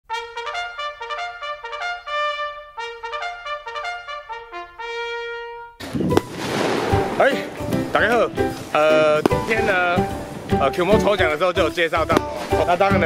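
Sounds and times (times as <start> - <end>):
brassy solo melody: 0.1 - 11.4.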